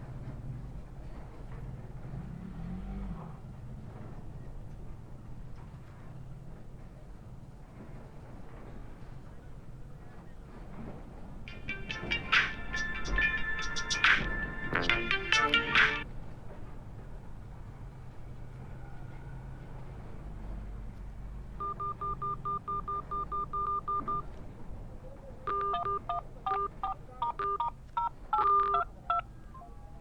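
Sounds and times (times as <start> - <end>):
phone ringtone melody: 11.5 - 16.0, 21.6 - 24.2, 25.5 - 29.8.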